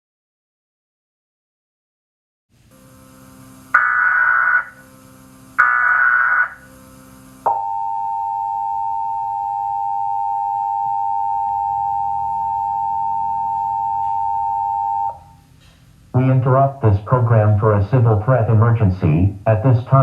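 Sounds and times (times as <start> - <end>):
data tone bursts: 3.7 - 4.9, 5.6 - 15.3
two-tone alert signal: 3.8 - 4.8, 5.6 - 6.7, 7.5 - 15.2.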